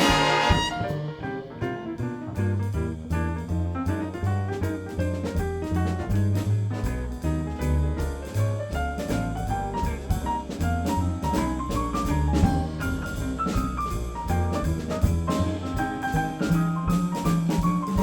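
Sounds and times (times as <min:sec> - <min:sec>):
drum kit cymbals: 0:00.0 - 0:01.0
jazz big band playing: 0:00.0 - 0:18.0
piano: 0:00.0 - 0:18.0
walking bass: 0:00.0 - 0:18.0.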